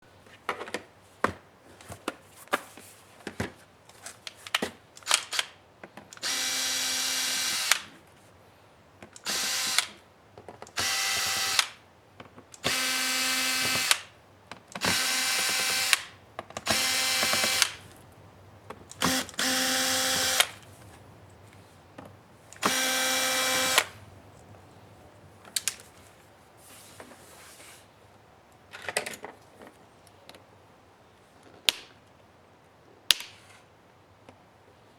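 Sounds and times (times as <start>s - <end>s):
electric screwdriver motor: 6.2s - 7.9s, 9.2s - 10.0s, 10.8s - 11.8s, 12.6s - 14.1s, 14.8s - 18.0s, 18.7s - 21.1s, 22.6s - 24.4s
handling clicks and taps: 13.6s - 26.0s.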